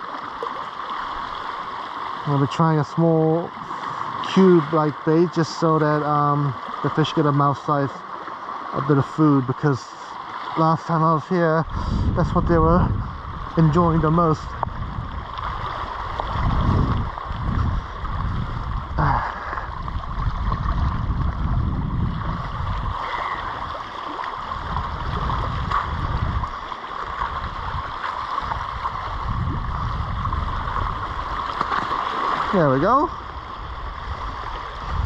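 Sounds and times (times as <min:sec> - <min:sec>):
sea water washing around rocks: 0:00.0 - 0:35.0
wind rumble on microphone: 0:11.5 - 0:35.0.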